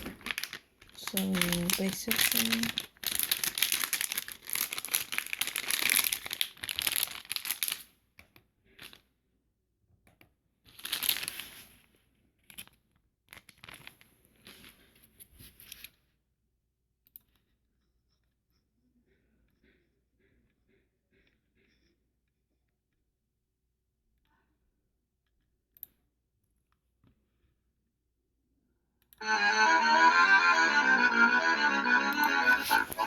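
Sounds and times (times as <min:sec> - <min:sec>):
material crinkling and rustling: 0:00.0 - 0:07.9, 0:10.7 - 0:11.8, 0:13.3 - 0:15.6.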